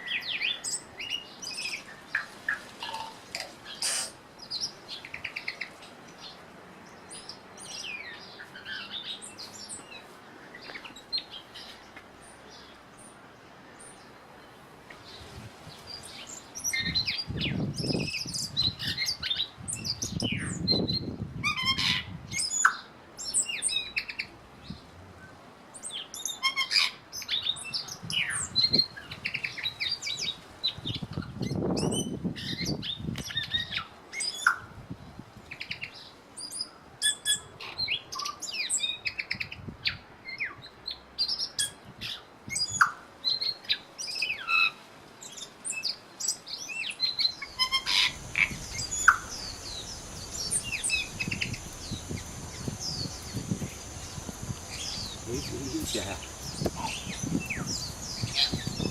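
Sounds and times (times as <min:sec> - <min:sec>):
birds chirping and whistling: 0:26.2 - 0:34.6, 0:45.3 - 0:58.9.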